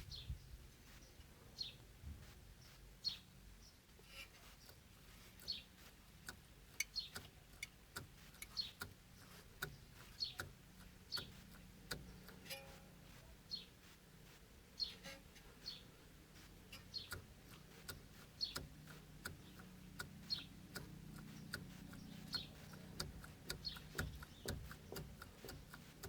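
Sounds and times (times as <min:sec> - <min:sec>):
steering rack knocking clicks: 0:16.7 - 0:26.0.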